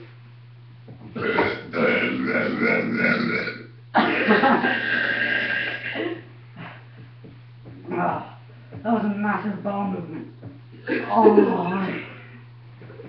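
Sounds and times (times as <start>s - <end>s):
long loud burps: 1.2s - 6.2s.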